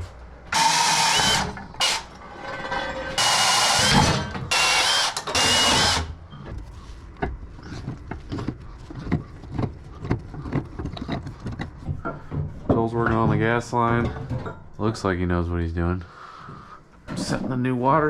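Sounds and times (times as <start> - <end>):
band saw motor whining: 0.5 - 2.2, 3.2 - 6.2
metal clanks and knocks: 1.2 - 9.2, 10.5 - 15.2.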